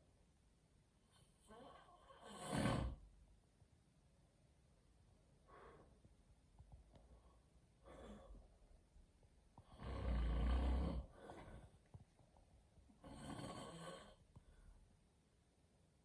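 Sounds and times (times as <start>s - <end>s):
loud snoring: 1.5s - 3.0s, 9.6s - 11.6s, 13.0s - 14.2s
faint breaths: 5.4s - 6.2s, 9.6s - 12.2s.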